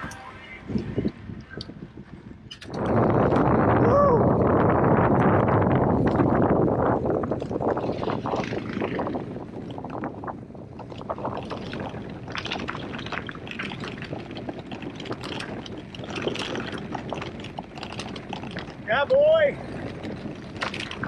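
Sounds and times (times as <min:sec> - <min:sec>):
bike rattling: 0:00.0 - 0:21.0
clicks and crackles: 0:10.7 - 0:21.0
bike tyres crunching on trail: 0:11.0 - 0:21.0.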